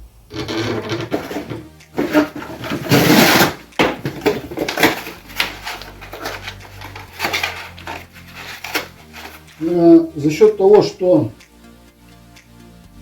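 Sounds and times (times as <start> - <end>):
knocks and scrapes: 0.3 - 9.5
cardboard tearing and crumpling: 0.4 - 9.5.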